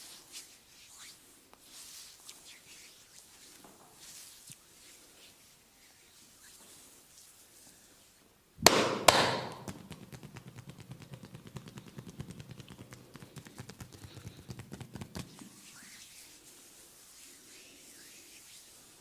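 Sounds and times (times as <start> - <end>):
loud sharp smacks: 8.6 - 10.4
percussive massage strikes: 8.6 - 15.3.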